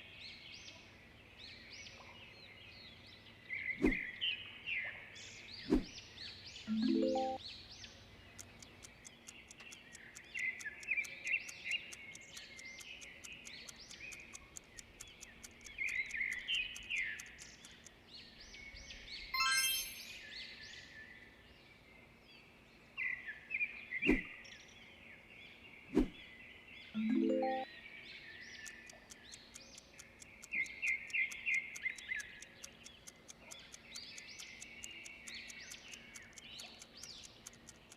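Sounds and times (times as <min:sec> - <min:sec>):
birds chirping: 0:00.2 - 0:21.3, 0:23.0 - 0:37.9
sharp clicks: 0:08.2 - 0:18.0, 0:28.5 - 0:37.9
bright ringing tone: 0:19.4 - 0:20.3.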